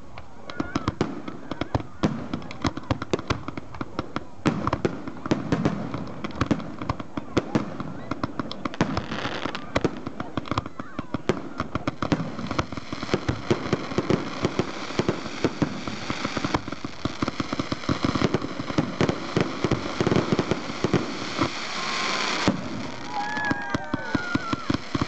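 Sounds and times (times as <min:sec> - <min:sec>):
fireworks bangs and crackling: 0:00.0 - 0:25.0
hissing noise: 0:17.2 - 0:25.0.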